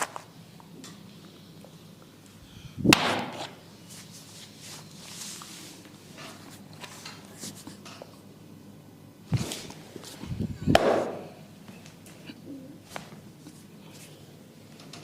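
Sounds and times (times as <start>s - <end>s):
sharp hand smack: 2.9s - 3.4s, 10.7s - 11.2s.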